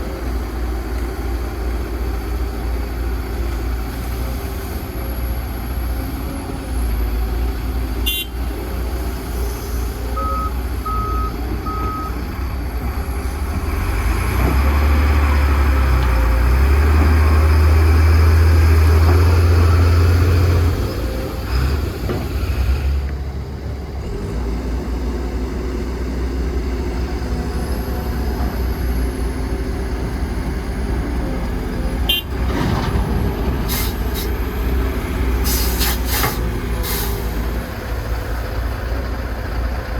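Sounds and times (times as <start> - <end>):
heavy machinery engine running: 0.0 - 39.9
short beeps: 10.2 - 12.2.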